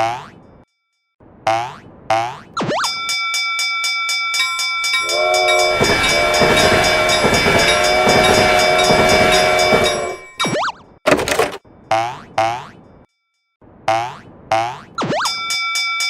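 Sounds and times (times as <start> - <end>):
cartoon boing: 1.4 - 2.8
railroad crossing bell dinging: 2.9 - 10.7
passing train clatter: 4.4 - 11.6
train horn chord: 4.9 - 10.4.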